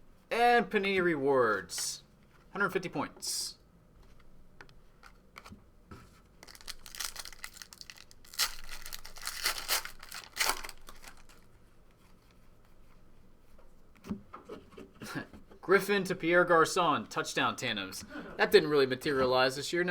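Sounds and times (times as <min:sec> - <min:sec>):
wrapper tearing and crinkling: 0:06.4 - 0:11.5.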